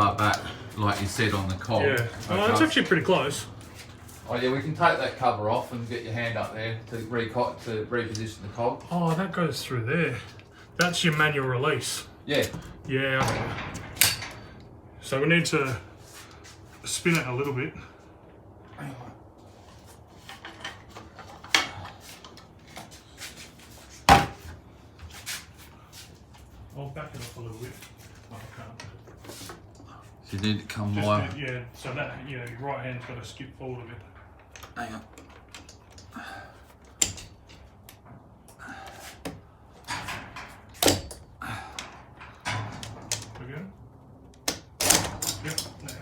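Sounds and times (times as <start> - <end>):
metal parts clicking and knocking: 12.4 - 14.4, 36.8 - 38.6
metal knocks and clanks: 12.4 - 14.7.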